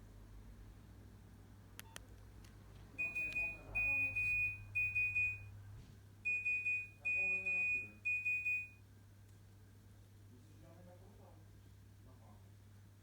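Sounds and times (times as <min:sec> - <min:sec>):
mobile phone beeping ringtone: 0:03.0 - 0:05.5.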